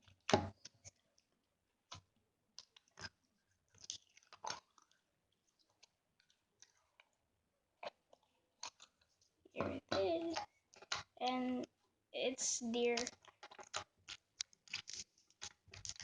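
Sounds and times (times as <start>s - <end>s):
crunchy slime crackling pops: 13.0s - 16.0s.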